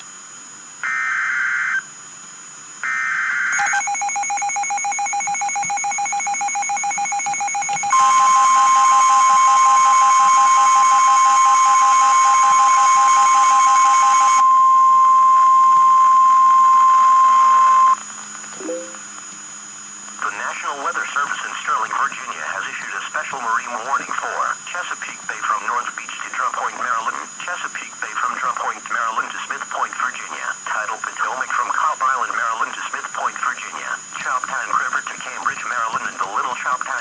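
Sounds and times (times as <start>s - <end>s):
steady warning tone: 2.8s - 37.0s
pulsing alert tone: 18.6s - 19.1s.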